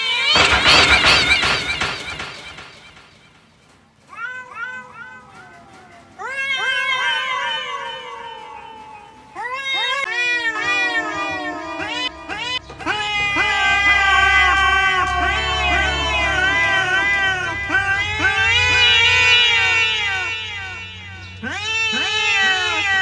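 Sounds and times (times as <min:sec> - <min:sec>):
cat screeching: 0:10.1 - 0:23.0
cats yowling: 0:10.1 - 0:23.0.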